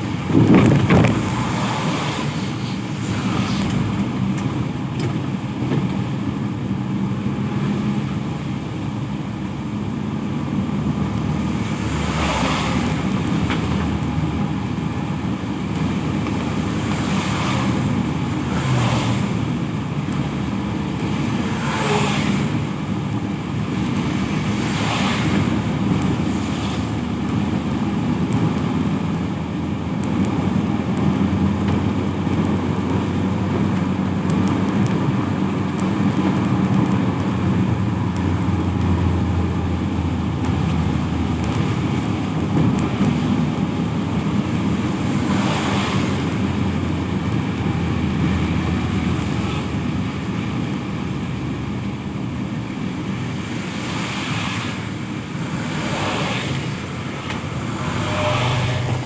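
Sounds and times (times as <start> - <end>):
low engine hum: 0.0 - 59.0
rain: 0.0 - 59.0
vehicles passing on wet road: 0.0 - 59.0.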